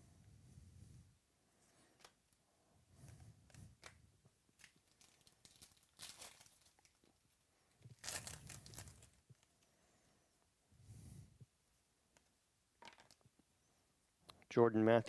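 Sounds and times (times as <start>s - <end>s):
card packs rustling and crinkling: 3.0s - 7.2s, 7.8s - 9.5s.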